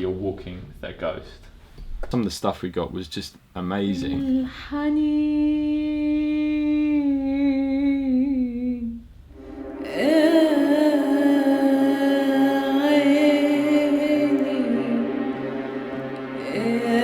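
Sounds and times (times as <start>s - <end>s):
woman singing: 4.0s - 9.0s, 9.8s - 17.0s.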